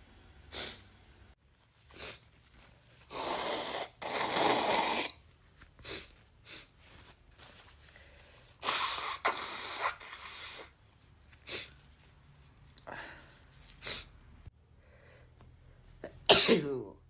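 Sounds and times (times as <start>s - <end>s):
short sniffs: 0.5s - 0.9s, 1.9s - 2.2s, 3.0s - 5.2s, 5.8s - 6.7s, 8.2s - 10.8s, 11.4s - 11.8s, 12.8s - 14.2s
person sneezing: 3.1s - 5.2s, 8.6s - 10.7s, 16.0s - 16.9s.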